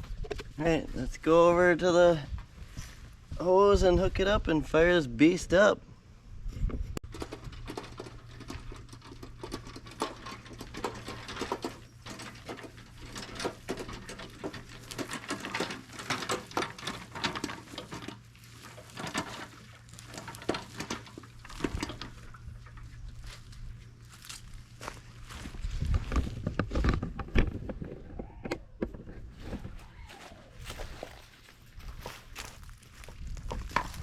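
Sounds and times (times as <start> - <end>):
steady low hum: 0.0 - 34.0
garden hose clicks and knocks: 7.0 - 18.2, 18.8 - 22.8.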